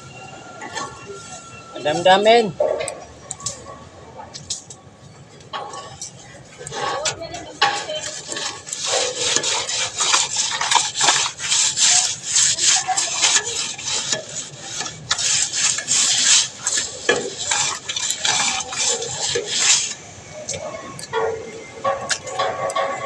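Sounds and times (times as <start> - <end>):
hand tool scraping rough surface: 5.6 - 23.0.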